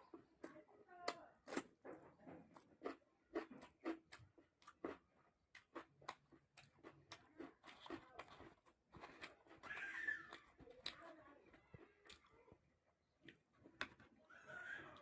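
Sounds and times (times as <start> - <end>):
chewing and wet mouth smacks: 2.8 - 11.0.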